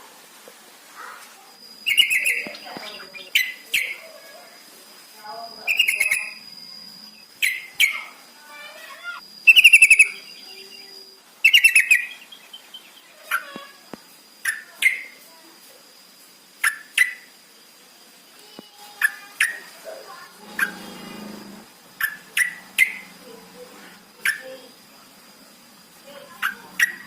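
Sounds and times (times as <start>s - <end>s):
faint steady high tone: 1.4s - 15.4s
birds chattering: 1.8s - 4.2s, 5.4s - 15.3s, 19.0s - 27.0s.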